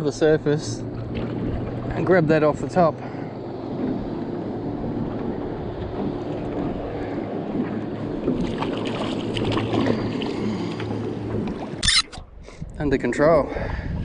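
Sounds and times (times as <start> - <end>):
wind noise on microphone: 11.4 - 14.0.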